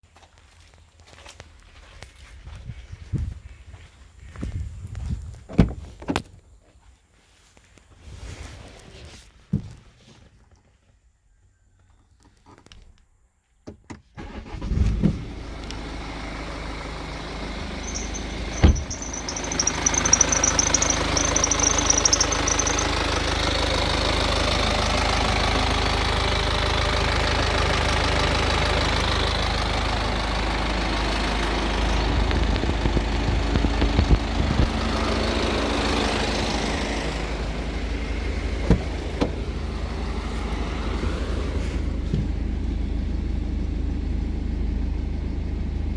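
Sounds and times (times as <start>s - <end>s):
diesel engine starting and idling: 14.2s - 45.9s
high-pitched wavering squeak: 17.8s - 23.2s.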